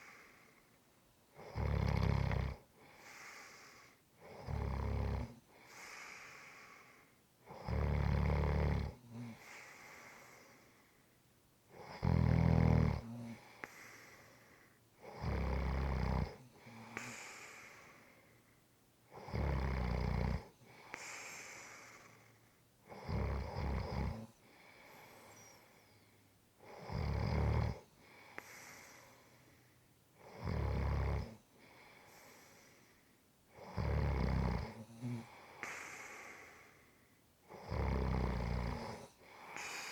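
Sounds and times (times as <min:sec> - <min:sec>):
soft breathing: 0:00.0 - 0:04.5, 0:05.4 - 0:07.7, 0:09.0 - 0:11.2, 0:13.0 - 0:15.6, 0:16.2 - 0:18.8, 0:20.4 - 0:30.5, 0:31.2 - 0:33.7, 0:34.6 - 0:37.7, 0:38.4 - 0:39.9
person snoring: 0:01.4 - 0:02.6, 0:04.2 - 0:05.4, 0:07.5 - 0:10.6, 0:11.8 - 0:14.3, 0:15.0 - 0:18.0, 0:19.1 - 0:22.2, 0:22.9 - 0:24.3, 0:26.6 - 0:27.8, 0:30.2 - 0:31.4, 0:33.6 - 0:36.8, 0:37.5 - 0:39.9.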